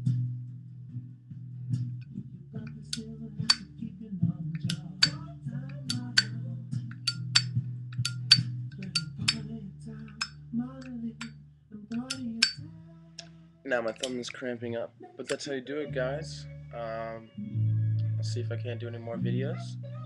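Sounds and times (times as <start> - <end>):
faint background music: 0.0 - 20.0
lighter lid clinking open and shut: 5.9 - 9.4, 11.9 - 12.6.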